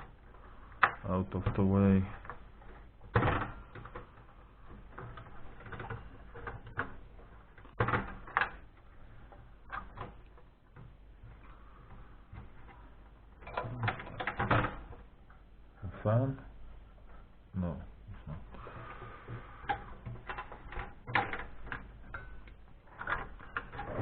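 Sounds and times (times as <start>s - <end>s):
clicks and rattles inside computer case: 0.0s - 15.4s, 16.5s - 24.0s.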